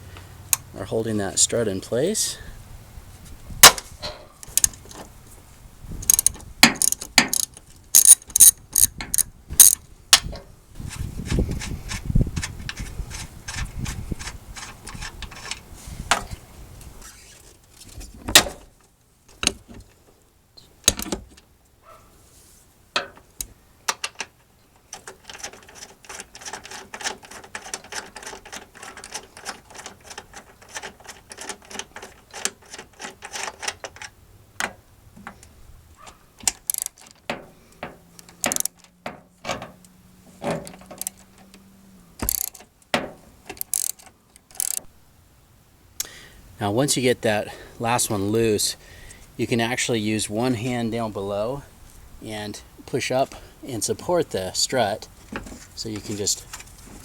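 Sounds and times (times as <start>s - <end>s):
socket ratchet clicking: 6.0s - 9.8s, 36.4s - 38.9s, 42.2s - 42.6s, 43.5s - 44.9s.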